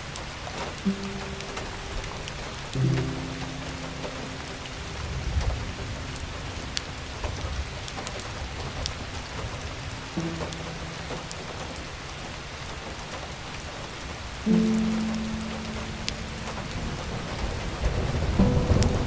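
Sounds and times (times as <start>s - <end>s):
soft background music: 0.6s - 8.3s, 9.0s - 13.4s, 14.3s - 19.0s
held low note: 18.4s - 19.0s.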